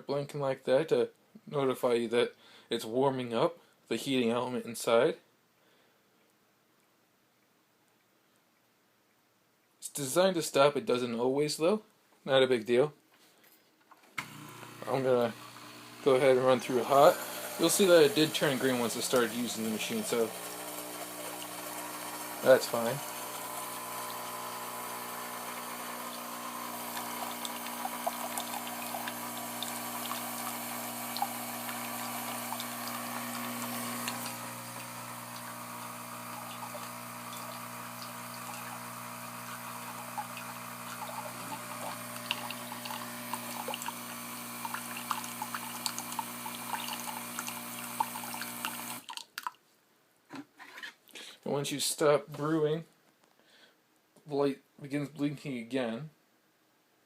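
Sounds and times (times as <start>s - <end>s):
pump humming: 14.2s - 49.1s
water running and dripping: 14.6s - 49.5s.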